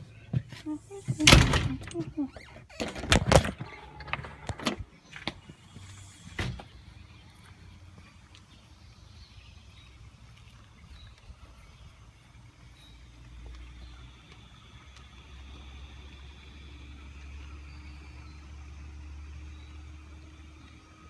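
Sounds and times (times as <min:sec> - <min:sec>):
blower fan humming: 0:00.0 - 0:07.1.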